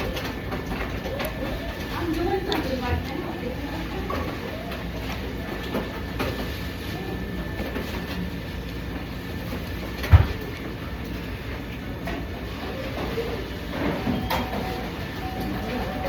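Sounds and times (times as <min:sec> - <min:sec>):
restaurant background rumble: 0:00.0 - 0:16.0.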